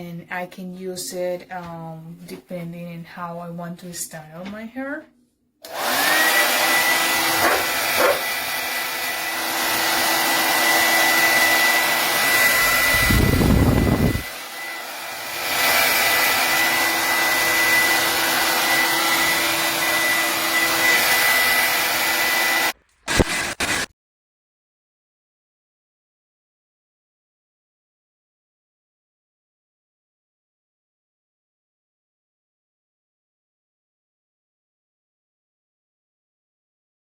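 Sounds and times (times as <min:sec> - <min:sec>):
hair dryer running: 0:05.6 - 0:23.9
low loud gust: 0:12.4 - 0:14.3.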